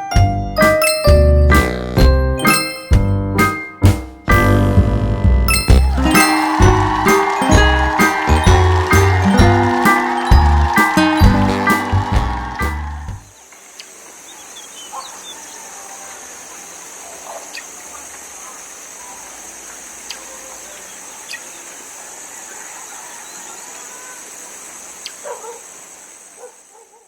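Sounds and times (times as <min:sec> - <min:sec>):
small birds chirping: 0:13.2 - 0:27.0
steady high-pitched hiss: 0:13.2 - 0:27.0.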